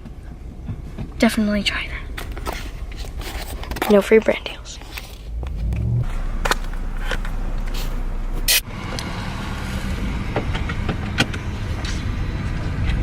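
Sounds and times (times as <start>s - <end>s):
car engine rumble from inside cabin: 1.8s - 12.6s.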